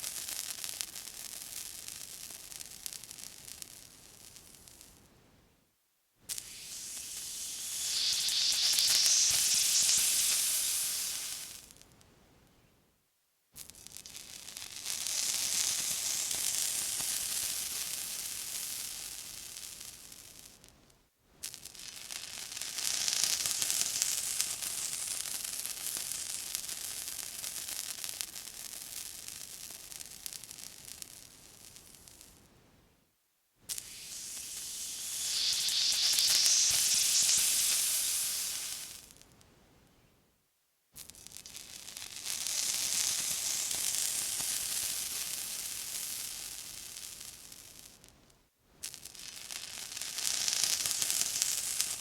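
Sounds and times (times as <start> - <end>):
water sizzling: 6.3 - 11.6, 33.7 - 39.0.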